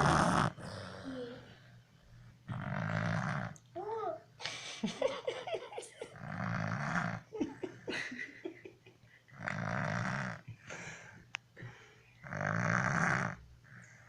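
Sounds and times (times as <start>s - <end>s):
snoring: 0.0s - 1.4s, 2.5s - 3.6s, 6.2s - 7.3s, 9.3s - 10.5s, 12.2s - 14.0s.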